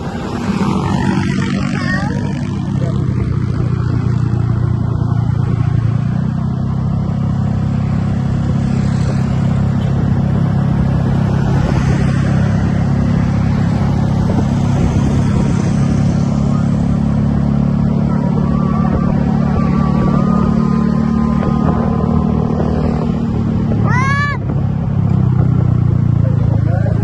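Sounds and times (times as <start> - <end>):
bus diesel engine rumbling: 0.0 - 27.0.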